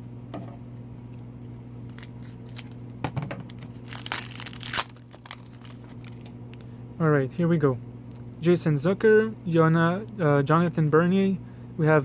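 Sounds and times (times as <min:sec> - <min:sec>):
foil wrapper crinkling and tearing: 0:01.9 - 0:02.8, 0:03.4 - 0:06.4.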